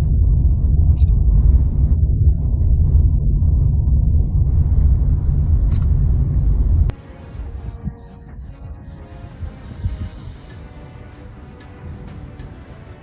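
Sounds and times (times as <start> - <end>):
low rumbling noise: 0.0 - 13.0.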